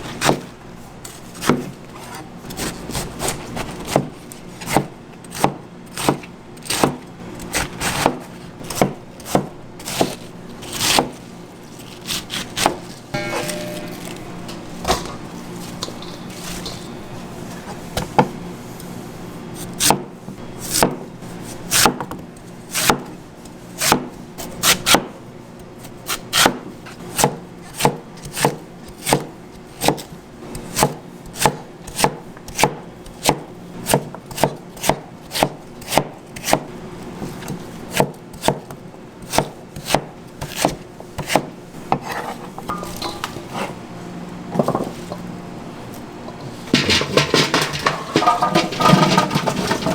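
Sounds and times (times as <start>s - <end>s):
knife chopping on cutting board: 0.2s - 0.5s, 1.4s - 11.2s, 12.0s - 14.2s, 19.8s - 21.0s, 21.7s - 22.2s, 22.8s - 23.2s, 23.8s - 25.1s, 26.4s - 43.7s.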